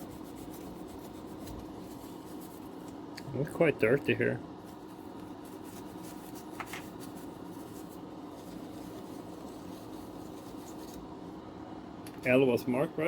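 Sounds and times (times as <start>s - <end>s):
light rubbing and scratching: 0.0s - 2.8s, 4.6s - 11.1s
steady low hum: 0.0s - 13.0s.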